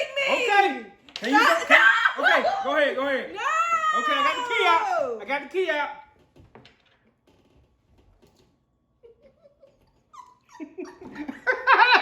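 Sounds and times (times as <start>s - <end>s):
faint clicks and rustling: 6.2s - 8.7s.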